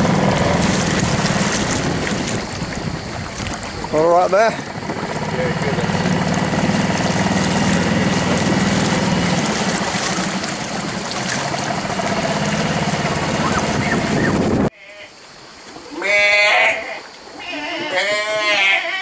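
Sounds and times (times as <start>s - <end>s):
boat engine running: 0.0s - 14.7s
water rushing: 0.0s - 15.8s.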